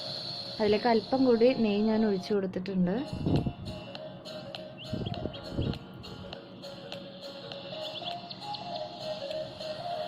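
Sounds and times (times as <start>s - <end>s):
high chirp-like notes: 3.1s - 10.0s.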